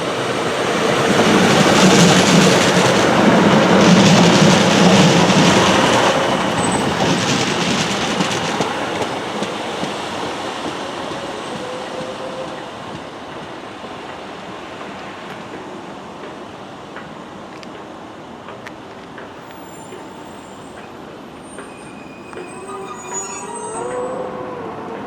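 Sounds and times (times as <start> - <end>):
train passing on rails: 0.0 - 25.0
wheels squealing: 19.5 - 25.0.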